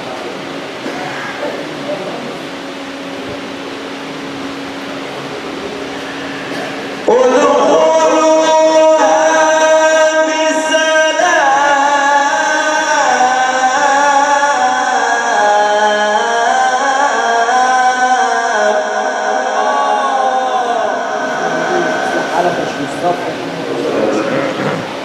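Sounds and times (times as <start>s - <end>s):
man reciting melodically: 7.0s - 25.0s.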